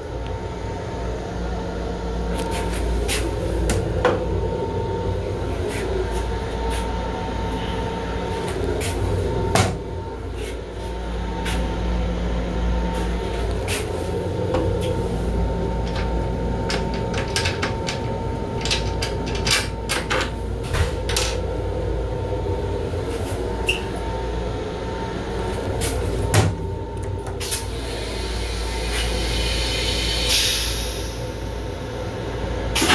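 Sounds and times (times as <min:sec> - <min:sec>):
train rumble: 0:00.0 - 0:32.9
sharp clicks and rattles: 0:15.8 - 0:20.4.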